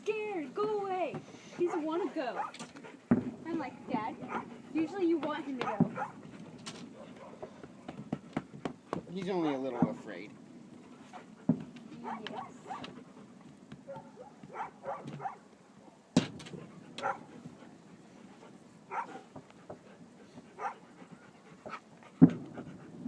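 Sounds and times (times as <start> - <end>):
firework bangs: 2.5 - 10.2, 16.1 - 17.2, 22.2 - 23.0.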